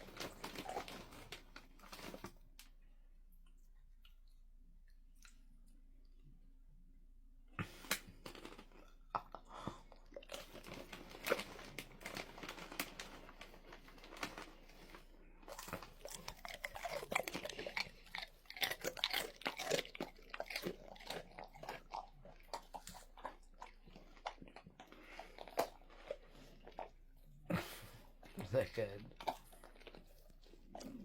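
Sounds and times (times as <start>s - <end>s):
dog crunching snacks: 0.0s - 2.4s, 7.6s - 9.4s, 10.0s - 27.0s, 27.6s - 31.0s.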